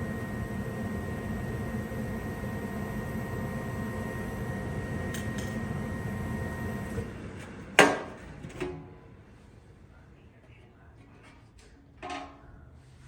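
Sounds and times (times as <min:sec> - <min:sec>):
gas furnace whirring hum: 0:00.0 - 0:13.0.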